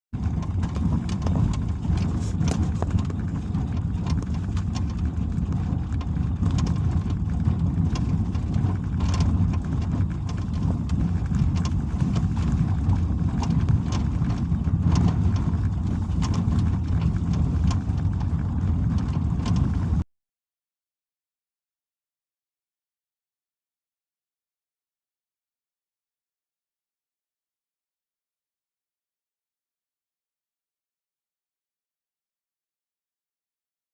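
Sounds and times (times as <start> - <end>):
hood rattling knocks: 0.2 - 20.0
road rumble: 0.2 - 20.0.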